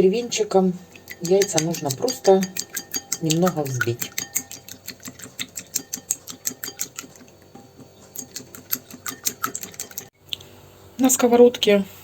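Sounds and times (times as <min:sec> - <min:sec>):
wire whisk tapping a bowl: 0:00.9 - 0:10.1.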